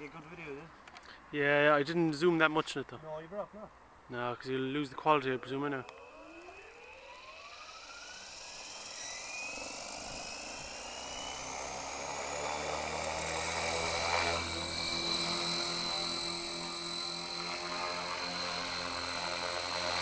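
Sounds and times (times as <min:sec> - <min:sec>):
rc helicopter motor and rotor whine: 0:04.9 - 0:20.0.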